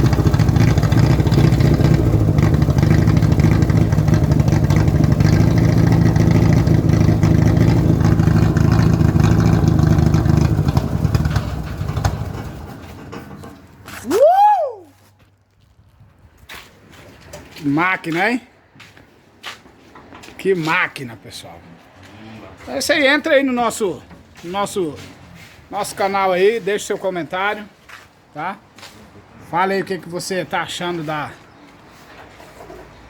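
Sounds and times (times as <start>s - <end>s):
car engine deep rumble: 0.0s - 13.0s.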